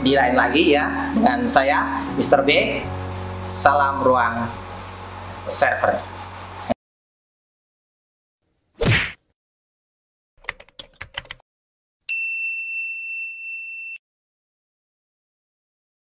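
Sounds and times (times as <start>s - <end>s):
high bell-like ding: 12.1s - 14.0s.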